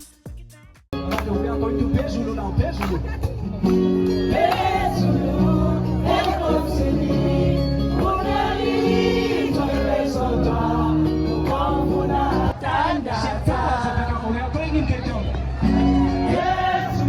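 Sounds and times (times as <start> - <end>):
song with singing voices: 3.9 - 14.5, 15.8 - 17.0.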